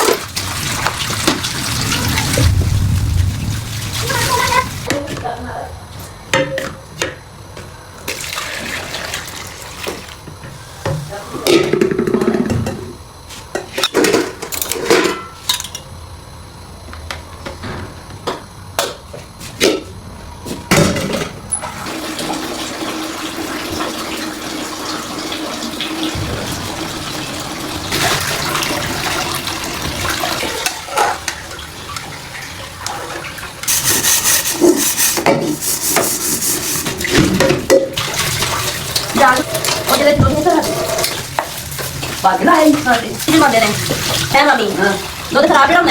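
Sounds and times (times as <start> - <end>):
water running from tap: 0.0 - 5.4, 8.0 - 11.4, 21.5 - 45.9
kitchen dishes clattering: 13.6 - 15.9, 36.8 - 45.9.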